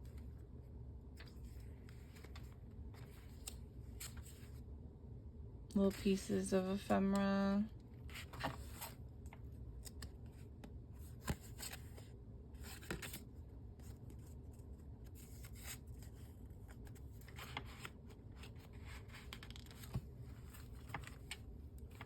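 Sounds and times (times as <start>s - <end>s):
paper rustling: 1.2s - 4.5s, 15.1s - 22.0s.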